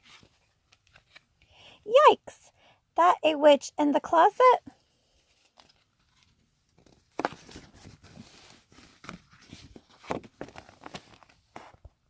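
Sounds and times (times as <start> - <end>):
paper rustling: 0.0 - 1.3, 5.2 - 11.9
book page turning: 0.0 - 1.4, 5.2 - 11.9.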